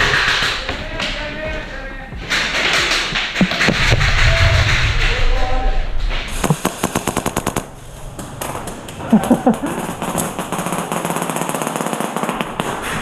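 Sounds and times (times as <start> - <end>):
airsoft gun firing bursts: 6.4 - 7.7, 9.6 - 13.0.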